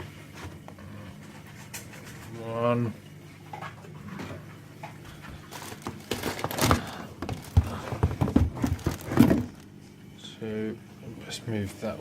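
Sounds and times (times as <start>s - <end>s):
packaging rustling: 5.5s - 9.8s
knocks and thuds: 6.1s - 9.6s.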